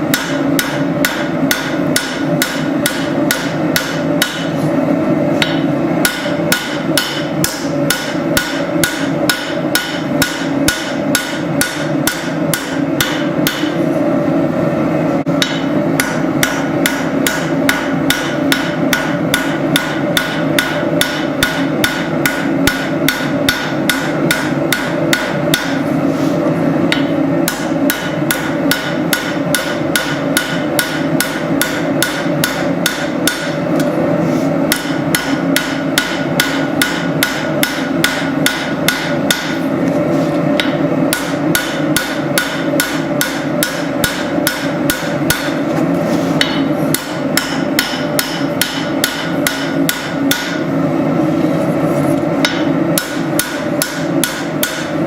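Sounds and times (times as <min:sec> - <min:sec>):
hammer striking steel on anvil: 0:00.0 - 0:04.6, 0:05.4 - 0:13.8, 0:15.3 - 0:25.9, 0:26.9 - 0:34.0, 0:34.6 - 0:39.6, 0:40.5 - 0:45.7, 0:46.4 - 0:50.7, 0:52.4 - 0:55.0.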